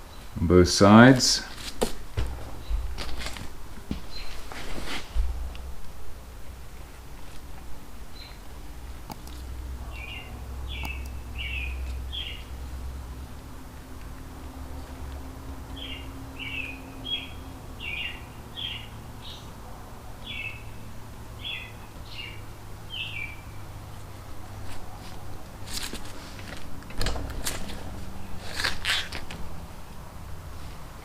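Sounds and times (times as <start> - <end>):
parts clattering and rustling: 1.5 - 5.6, 24.6 - 29.5
bird chirping: 4.1 - 4.4, 8.1 - 8.4, 9.8 - 12.6, 15.7 - 19.6, 20.2 - 23.7.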